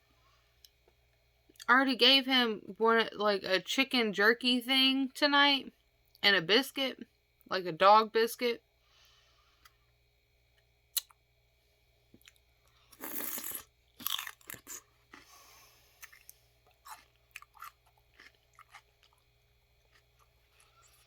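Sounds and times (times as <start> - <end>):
celery crunching: 12.2 - 15.3, 16.0 - 19.2.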